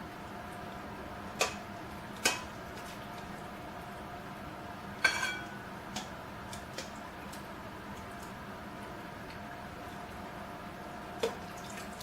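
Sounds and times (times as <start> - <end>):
utensil clinking against cookware: 5.0 - 5.5.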